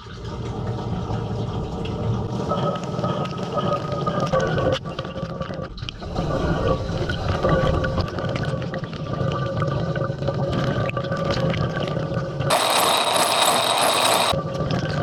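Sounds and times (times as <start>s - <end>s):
dishwasher pump humming: 12.5s - 14.4s.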